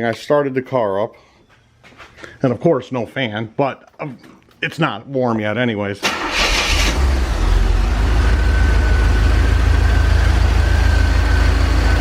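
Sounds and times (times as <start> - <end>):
car engine idling: 6.1 - 12.0.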